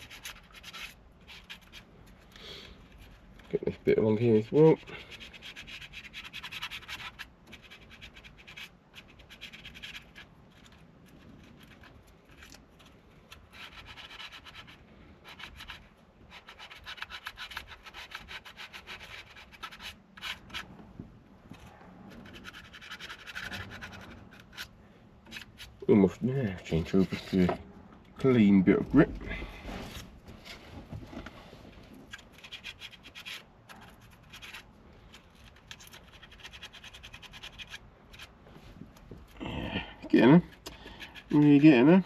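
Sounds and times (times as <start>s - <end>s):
sandpaper scratching by hand: 0.0s - 2.2s, 4.2s - 12.5s, 13.3s - 20.7s, 22.2s - 24.7s, 32.1s - 38.3s.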